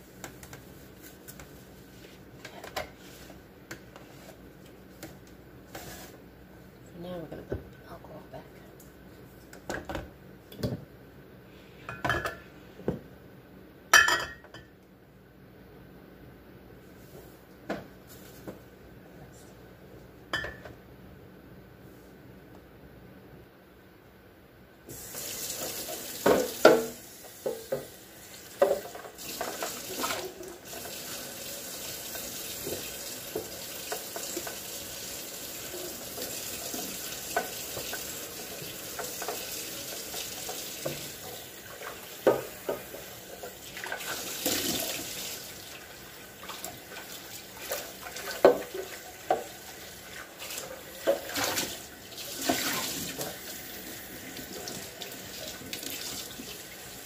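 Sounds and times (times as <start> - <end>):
dishes clattering: 11.9 - 12.4, 14.0 - 14.7, 20.3 - 20.8.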